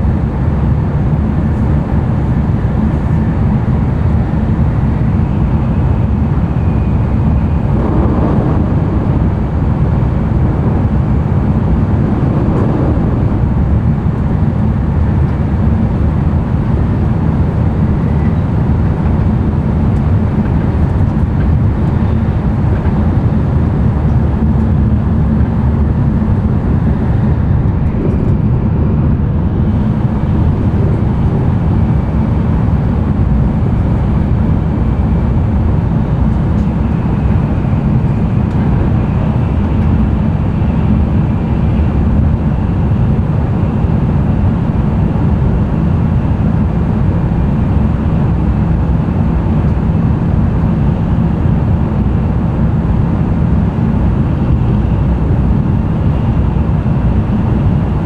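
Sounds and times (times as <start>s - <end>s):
train wheels rumbling: 4.1s - 42.2s
faint high whine: 4.8s - 15.6s.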